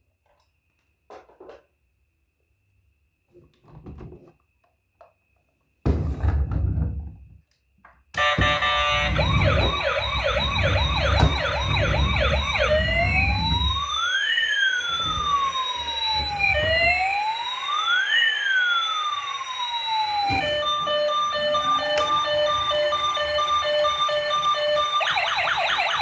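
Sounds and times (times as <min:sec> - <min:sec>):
tinny beeping tune: 0:08.2 - 0:13.8
toy electronic siren: 0:08.2 - 0:26.0.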